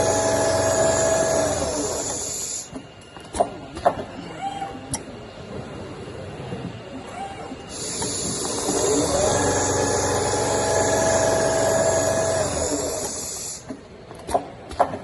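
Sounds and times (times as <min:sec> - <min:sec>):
sewing machine stitching: 0:07.8 - 0:13.3.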